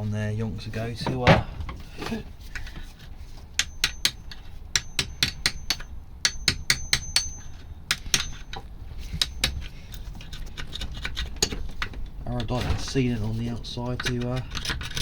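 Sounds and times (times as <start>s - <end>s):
hand tool chipping metal clicks: 3.6s - 12.5s, 13.9s - 15.0s.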